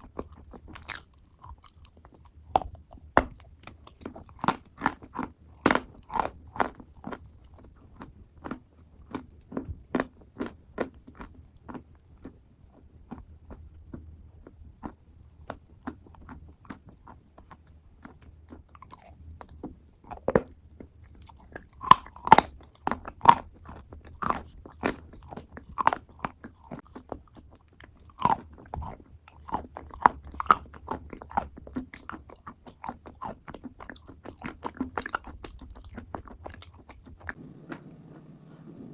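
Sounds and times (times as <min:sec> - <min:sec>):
chewing wet clay paste: 0:00.0 - 0:38.9.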